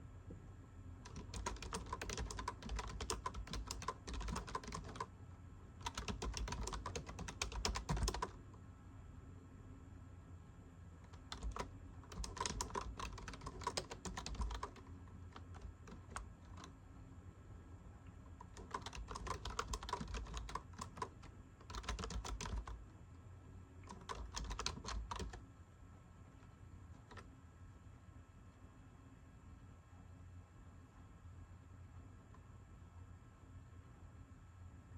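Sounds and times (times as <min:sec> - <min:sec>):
typing on computer keyboard: 0:01.0 - 0:05.1, 0:05.8 - 0:08.4, 0:11.1 - 0:16.8, 0:18.4 - 0:22.8, 0:23.8 - 0:25.4, 0:27.0 - 0:27.3.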